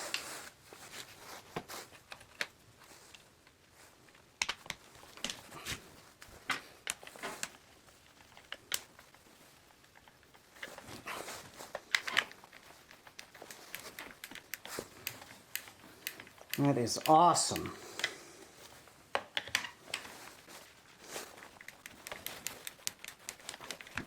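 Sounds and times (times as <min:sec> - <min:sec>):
plastic parts clicking and scraping: 0:01.0 - 0:24.0.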